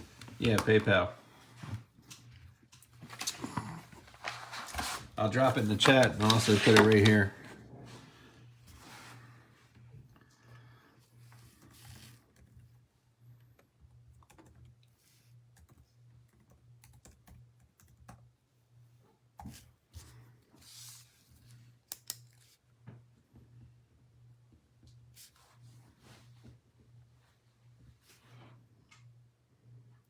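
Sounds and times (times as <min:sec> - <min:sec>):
typing on computer keyboard: 0:14.1 - 0:14.7, 0:15.6 - 0:18.2.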